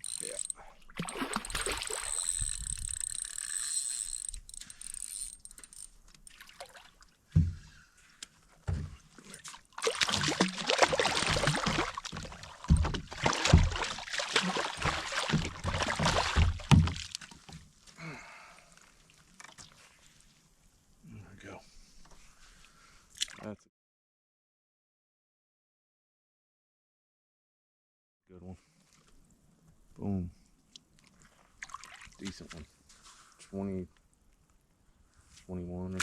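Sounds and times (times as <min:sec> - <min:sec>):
fish splashing in shallow water: 0:00.0 - 0:04.2, 0:09.4 - 0:17.5, 0:31.2 - 0:32.2.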